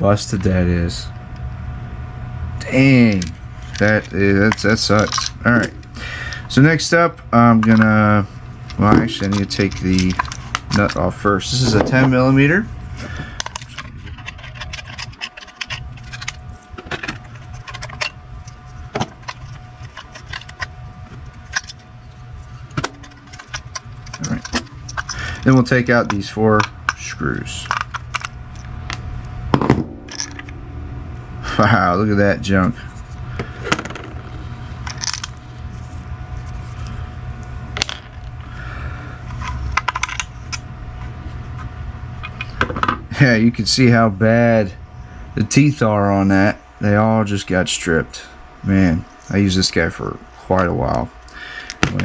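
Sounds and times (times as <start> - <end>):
steady low hum: 0.0 - 52.0
small metal parts clinking: 3.2 - 6.5, 8.7 - 11.0, 13.1 - 29.0, 29.6 - 30.6, 33.7 - 35.4, 39.3 - 40.3.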